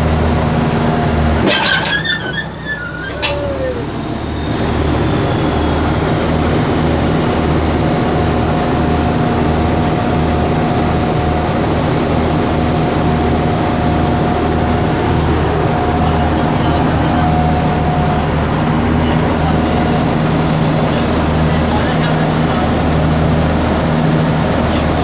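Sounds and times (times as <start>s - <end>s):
bulldozer diesel engine running: 0.0s - 25.0s
thin steady whine: 0.0s - 25.0s.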